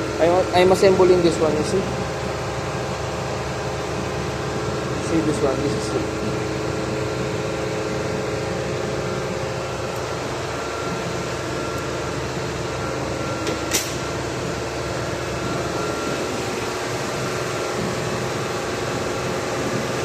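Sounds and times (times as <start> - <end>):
ventilation machinery hum: 0.0 - 20.0.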